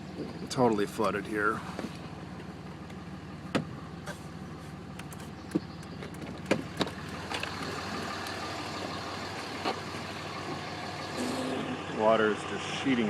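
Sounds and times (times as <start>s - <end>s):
car engine idling: 0.0s - 13.0s
sharp clicks: 4.9s - 7.6s.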